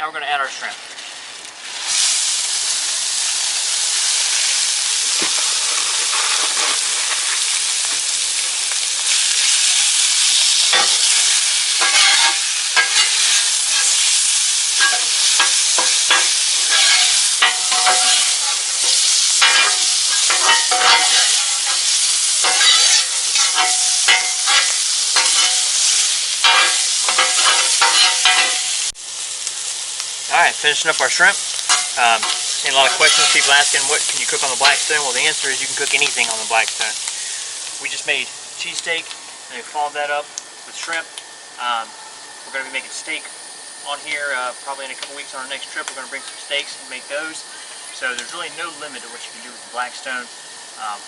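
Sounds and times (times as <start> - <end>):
shrimp sizzling on griddle: 0.1 - 51.0
metal spatula scraping: 5.3 - 7.4, 10.7 - 14.2, 14.8 - 28.7, 31.7 - 34.9.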